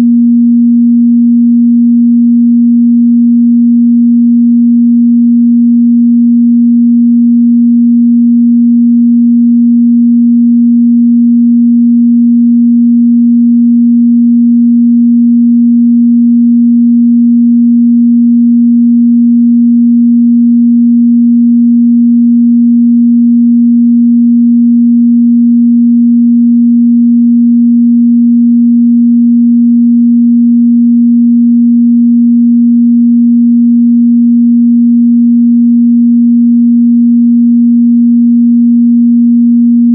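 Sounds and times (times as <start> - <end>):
pure sine test tone: 0.0 - 39.9.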